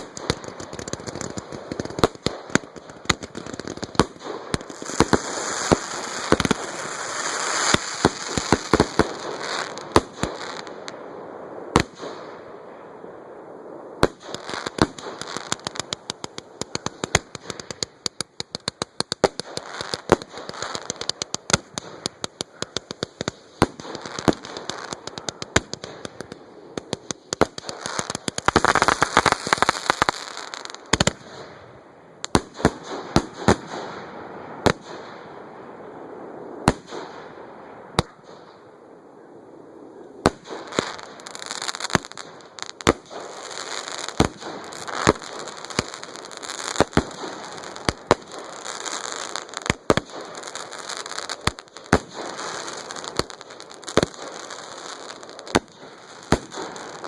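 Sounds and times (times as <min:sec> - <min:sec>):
firework crackling: 0:00.0 - 0:12.5, 0:13.7 - 0:31.6, 0:40.1 - 0:57.0.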